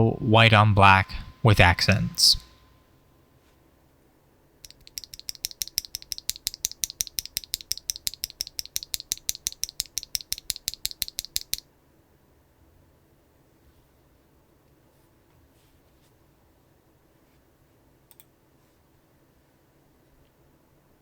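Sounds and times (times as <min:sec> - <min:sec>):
mechanical keyboard typing: 0:04.7 - 0:11.6.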